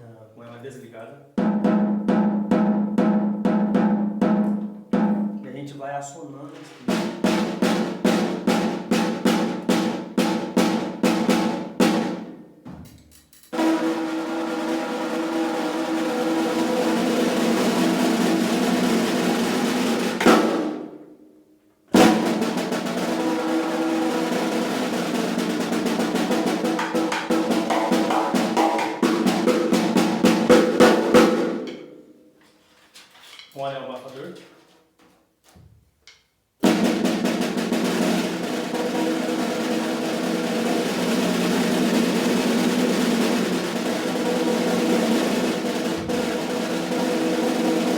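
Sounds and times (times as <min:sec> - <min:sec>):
snare drum rolls: 0:06.6 - 0:21.0, 0:21.9 - 0:32.0, 0:36.6 - 0:47.9.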